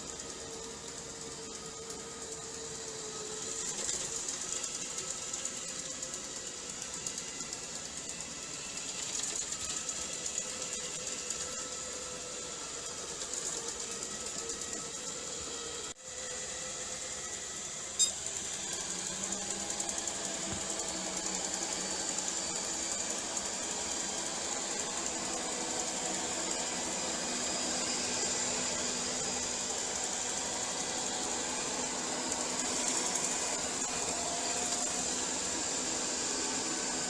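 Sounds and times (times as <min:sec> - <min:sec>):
robot vacuum whirring: 0:00.0 - 0:37.0.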